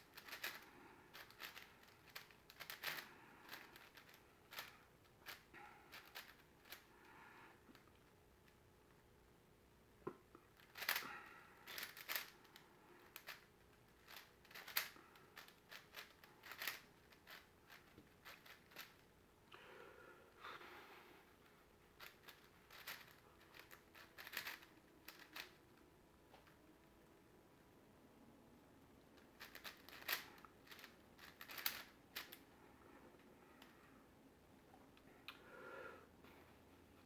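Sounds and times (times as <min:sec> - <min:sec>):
plastic puzzle cube clicking: 0:00.1 - 0:00.6, 0:01.2 - 0:06.8, 0:10.6 - 0:11.0, 0:11.7 - 0:12.3, 0:14.1 - 0:19.0, 0:22.0 - 0:25.6, 0:29.4 - 0:32.4.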